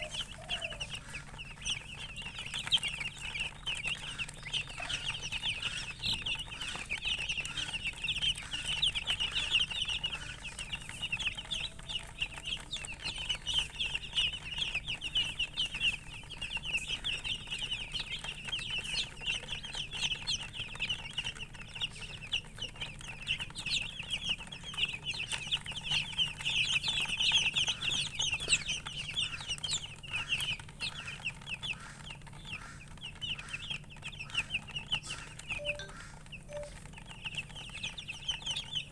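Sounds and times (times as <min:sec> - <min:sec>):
chicks peeping: 0:00.0 - 0:38.9.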